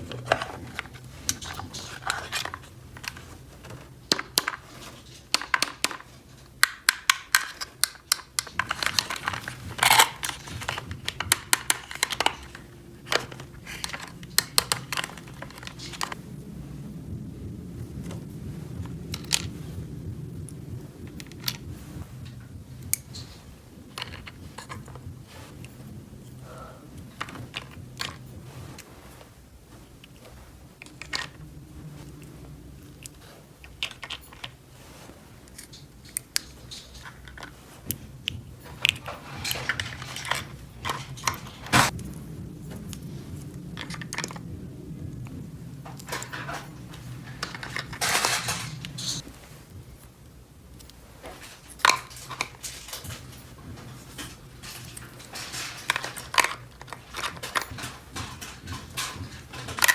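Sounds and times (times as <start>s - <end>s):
low steady hum: 0.0s - 59.9s
rustling: 0.0s - 59.9s
plastic toy pieces clicking: 5.3s - 16.2s.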